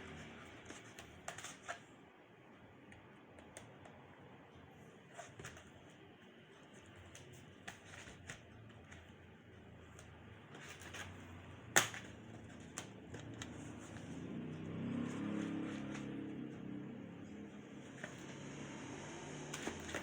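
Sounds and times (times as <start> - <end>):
clicks and taps of laptop parts: 11.7 - 13.7.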